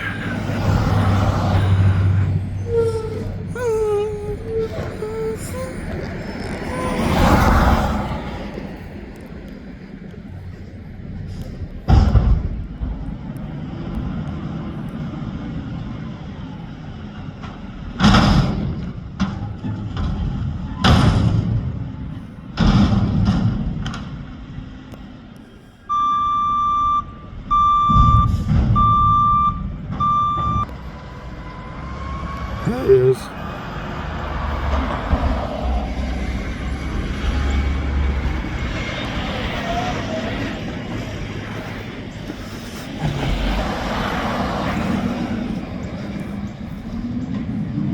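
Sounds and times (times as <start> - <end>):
garbage truck engine rumble: 0.0 - 47.9
truck backup alarm beeping: 25.8 - 33.0.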